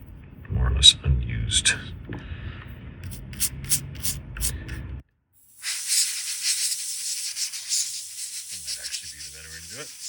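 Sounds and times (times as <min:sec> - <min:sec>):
swab scrubbing circuit board: 0:05.6 - 0:10.0.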